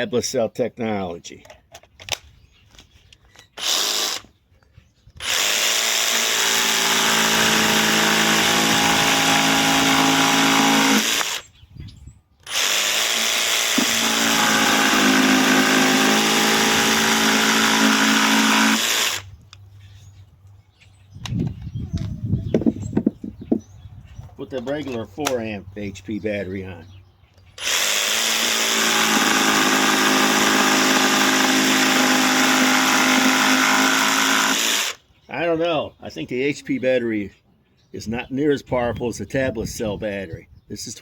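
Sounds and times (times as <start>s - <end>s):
jigsaw running: 3.6s - 4.3s, 5.2s - 11.5s, 12.4s - 19.3s, 27.6s - 35.0s.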